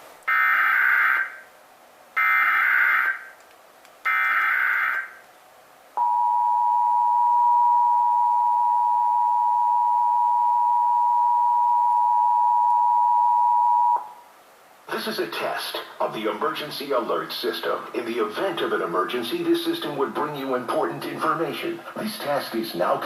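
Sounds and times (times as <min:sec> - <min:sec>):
two-tone attention signal: 0:06.0 - 0:14.2.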